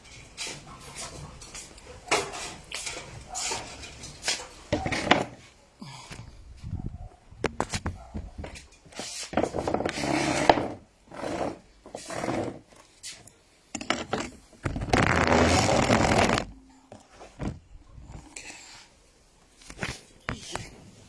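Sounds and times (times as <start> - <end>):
goods scraping and knocking: 0.4 - 5.5, 7.6 - 13.2, 13.8 - 18.3.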